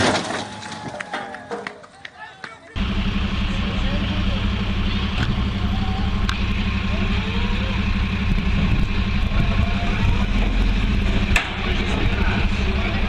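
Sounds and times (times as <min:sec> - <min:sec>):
vehicle engine droning: 0:02.8 - 0:13.0.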